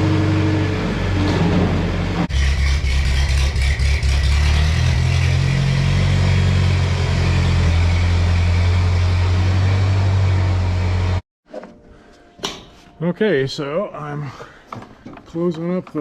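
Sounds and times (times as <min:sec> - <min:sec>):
engine running: 0:00.0 - 0:11.2.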